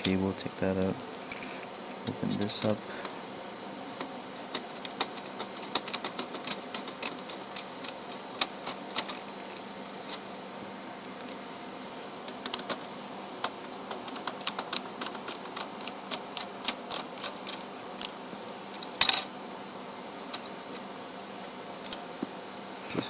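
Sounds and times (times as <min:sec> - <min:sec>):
faint steady hum: 0:00.0 - 0:23.0
parts clattering: 0:12.2 - 0:19.3
plastic parts clicking: 0:12.3 - 0:18.1.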